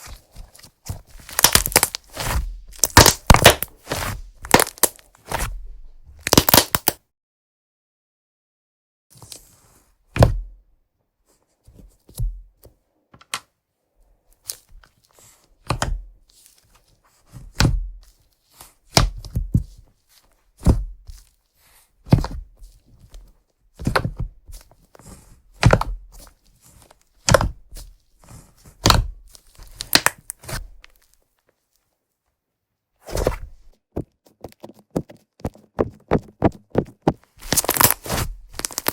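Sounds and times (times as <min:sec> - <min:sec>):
slime squished by hand: 0:01.1 - 0:05.5, 0:06.2 - 0:07.0, 0:37.4 - 0:38.9.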